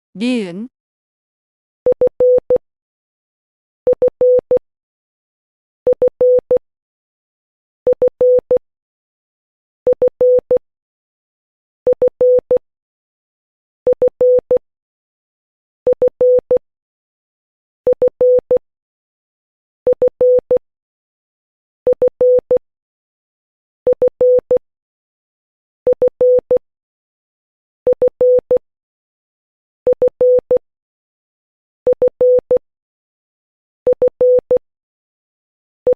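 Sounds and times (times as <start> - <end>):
morse code beeps: 31.9 - 32.4, 33.9 - 34.5.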